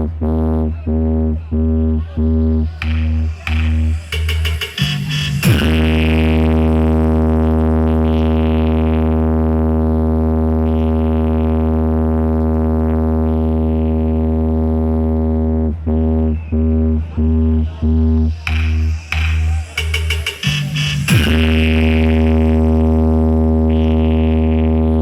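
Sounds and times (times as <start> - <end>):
deep synthesized bass tone: 0.0 - 25.0.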